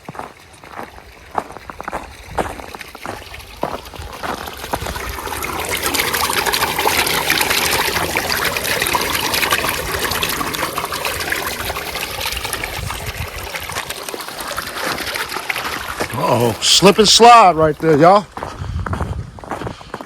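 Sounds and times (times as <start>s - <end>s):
water trickling and splashing: 0.0s - 20.0s.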